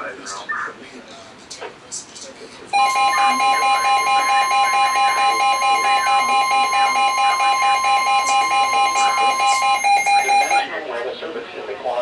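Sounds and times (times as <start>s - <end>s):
rapidly pulsing low beep: 2.8s - 10.7s
steady high alarm tone: 2.8s - 10.7s.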